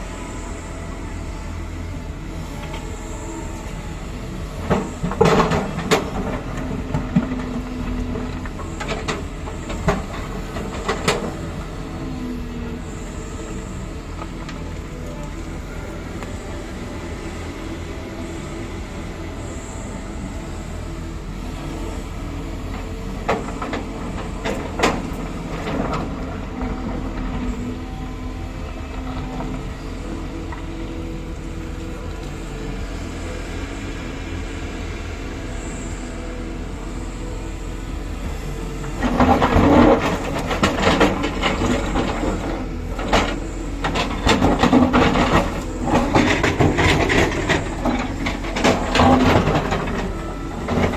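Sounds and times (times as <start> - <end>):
diesel engine running: 0.0 - 50.9
metal clanking and scraping: 39.0 - 50.9.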